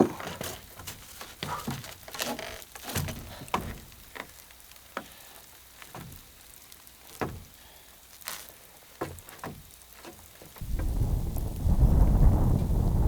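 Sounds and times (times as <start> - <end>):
wood fire crackling: 0.0 - 13.0
sharp fire pops: 10.6 - 13.0.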